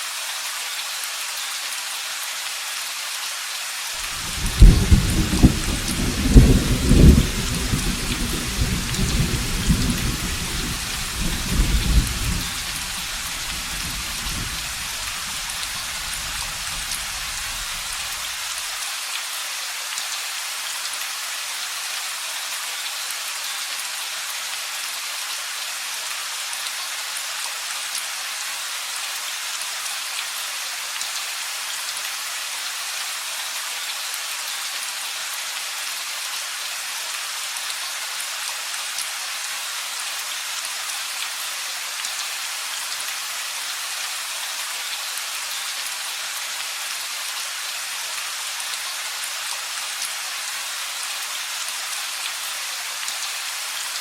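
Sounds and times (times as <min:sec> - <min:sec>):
steady rain: 0:00.0 - 0:54.0
thunder cracking and rumbling: 0:04.1 - 0:18.0.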